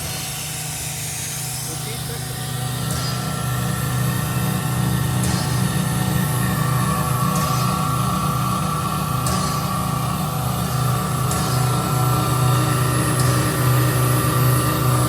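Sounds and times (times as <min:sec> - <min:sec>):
air compressor running: 0:00.0 - 0:15.0.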